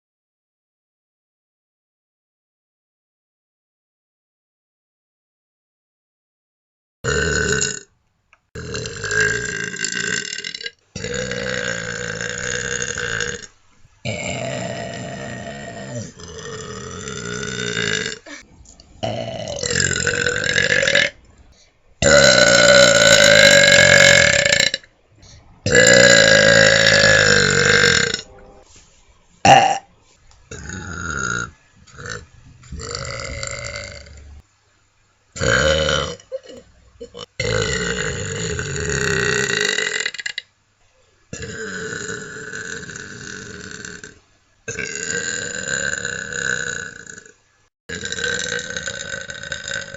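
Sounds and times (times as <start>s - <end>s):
person belching: 7.0s - 7.9s, 8.6s - 21.3s, 22.0s - 24.9s, 25.6s - 28.3s, 29.4s - 29.9s, 30.5s - 34.4s, 35.4s - 40.5s, 41.3s - 49.9s.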